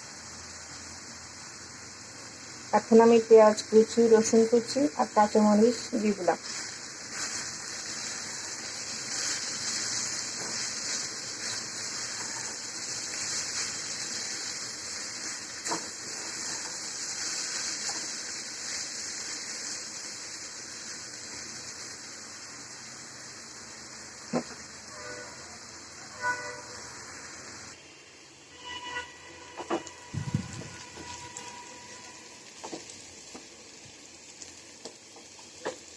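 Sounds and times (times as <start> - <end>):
vegetables sizzling in oil: 0.0 - 35.9.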